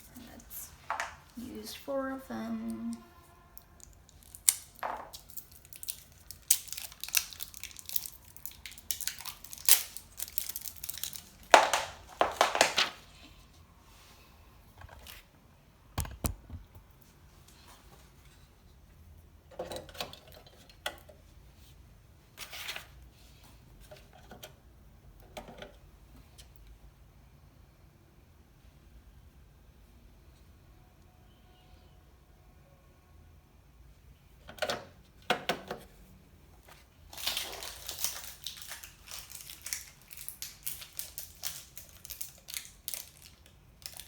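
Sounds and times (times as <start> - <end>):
packaging tearing and crinkling: 3.8 - 12.8, 37.1 - 44.0.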